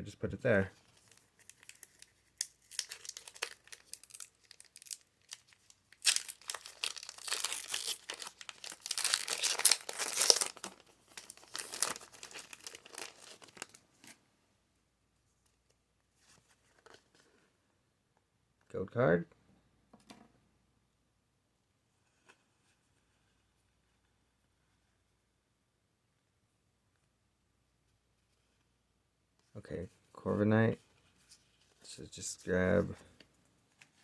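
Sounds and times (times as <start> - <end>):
foil wrapper crinkling and tearing: 0.8 - 13.8.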